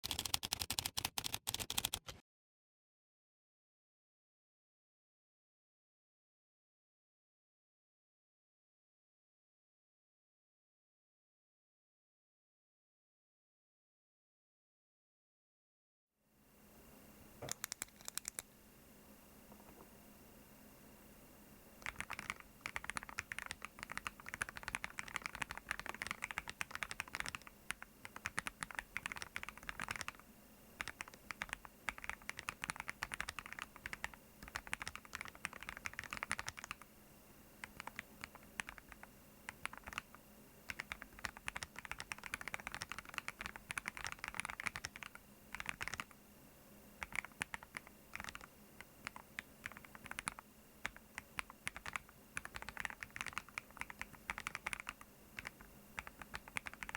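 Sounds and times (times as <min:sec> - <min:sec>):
keyboard key clicks: 0:00.0 - 0:02.2, 0:17.4 - 0:18.5.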